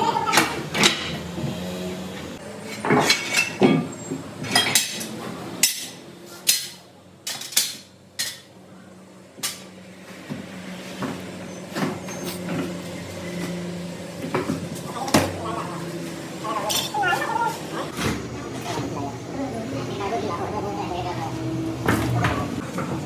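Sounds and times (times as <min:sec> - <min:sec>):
metal tools knocking and clinking: 0:06.5 - 0:08.5.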